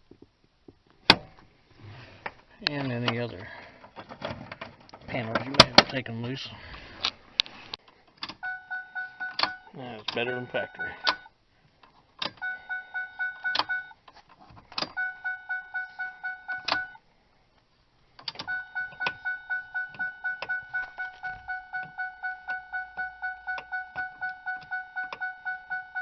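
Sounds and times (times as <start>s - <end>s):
car warning chime dinging: 8.4s - 11.3s, 12.3s - 14.0s, 14.9s - 17.0s, 18.4s - 26.0s.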